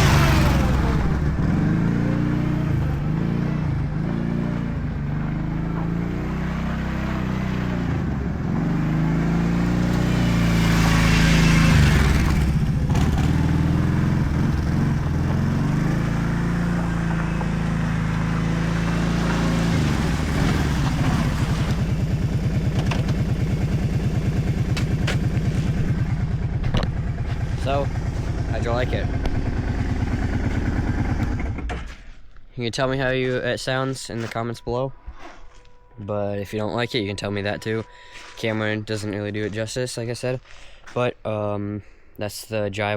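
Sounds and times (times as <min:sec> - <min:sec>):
loud atv engine driving past: 0:00.0 - 0:31.7.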